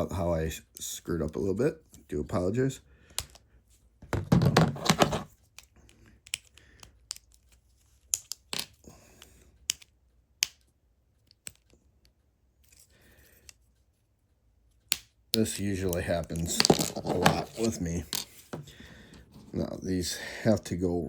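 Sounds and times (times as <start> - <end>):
plastic bricks snapping apart: 8.0 - 8.8, 9.7 - 10.6, 14.9 - 15.4
plastic bricks rattling: 16.3 - 18.3.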